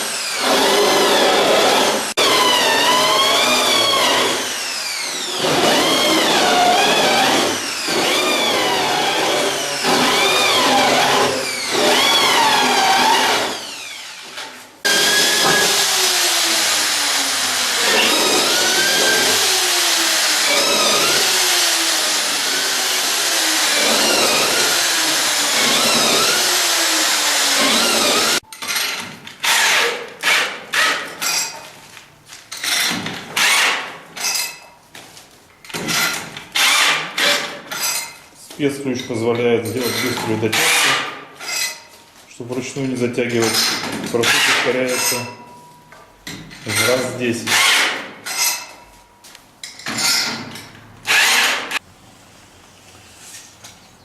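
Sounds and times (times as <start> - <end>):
cordless drill motor running: 0.1 - 14.3, 14.9 - 28.4.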